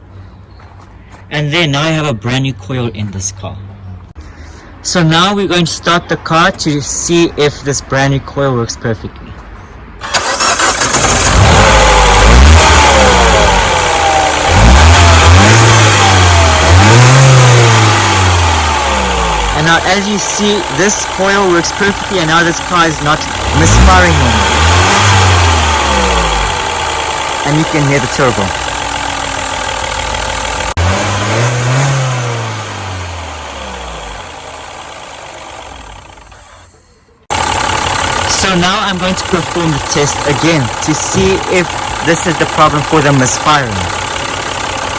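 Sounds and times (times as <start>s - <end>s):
car engine revving: 10.0s - 36.6s, 37.3s - 44.9s.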